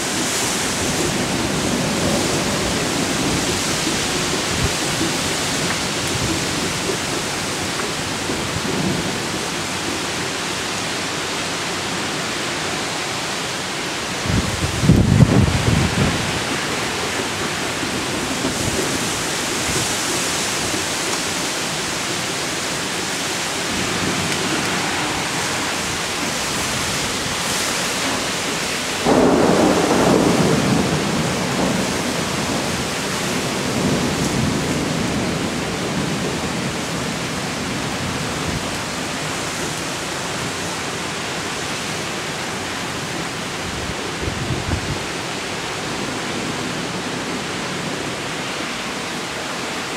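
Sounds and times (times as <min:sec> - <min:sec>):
heavy rain: 0:00.0 - 0:49.9
thunderclap rumbling: 0:14.2 - 0:39.0.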